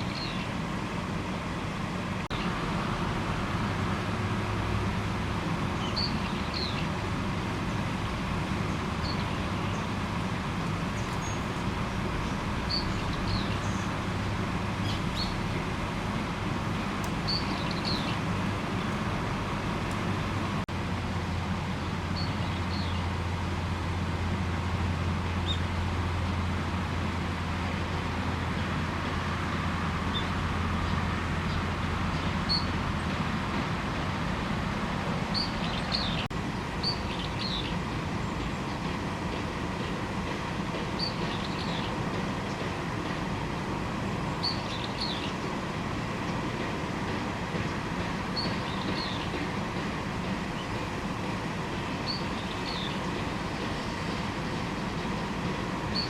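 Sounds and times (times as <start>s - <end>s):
small birds chirping: 0.0s - 1.0s, 5.7s - 20.6s, 21.8s - 23.1s, 30.1s - 33.2s, 35.3s - 43.3s, 44.1s - 45.7s, 47.0s - 56.0s.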